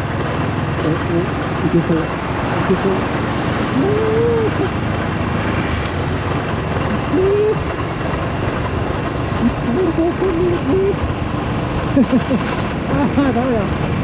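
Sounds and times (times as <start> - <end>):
motorcycle engine running: 0.0 - 14.0
road and wind noise: 0.0 - 14.0
short voice-like pitched sounds: 3.7 - 4.7, 6.9 - 7.6.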